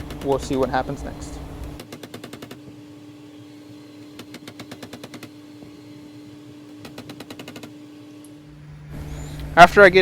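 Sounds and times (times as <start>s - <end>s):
steady hum: 0.0s - 1.9s, 2.6s - 10.0s
fast run of sharp clicks: 0.0s - 2.6s, 6.8s - 7.7s.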